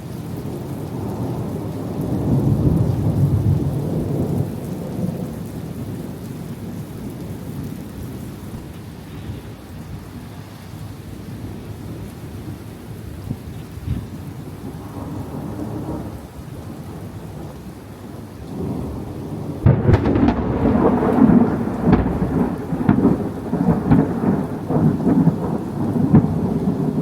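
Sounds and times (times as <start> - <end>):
rain: 0.0 - 27.0
thunder rumbling: 0.3 - 10.3, 11.2 - 27.0
loud close thunderclap: 13.3 - 17.5, 18.5 - 27.0.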